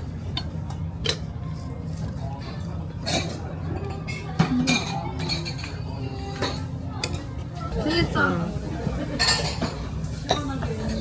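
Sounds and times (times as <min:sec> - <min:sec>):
restaurant background hum: 0:00.0 - 0:11.0
cutlery and dishes clinking: 0:02.5 - 0:07.3, 0:09.1 - 0:11.0.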